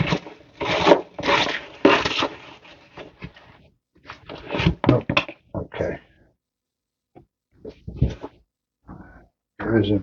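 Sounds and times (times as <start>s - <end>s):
packaging rustling and scraping: 0.0s - 5.0s
clicks and crinkles: 0.0s - 5.7s.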